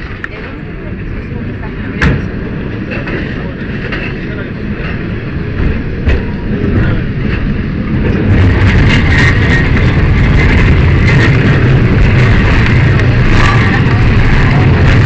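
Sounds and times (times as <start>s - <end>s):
tram rumbling along rails: 0.0s - 15.0s.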